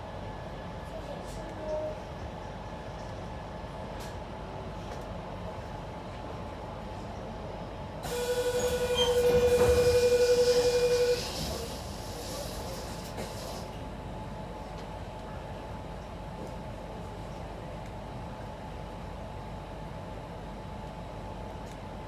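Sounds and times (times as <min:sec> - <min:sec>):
train hum: 0:00.0 - 0:22.0
train rushing: 0:08.0 - 0:13.7.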